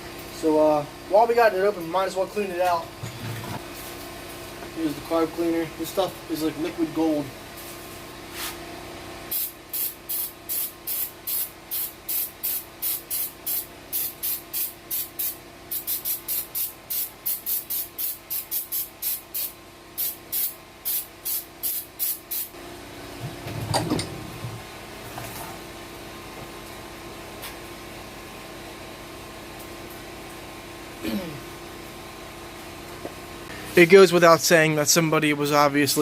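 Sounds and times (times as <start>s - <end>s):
aerosol spray hissing bursts: 9.3s - 22.6s.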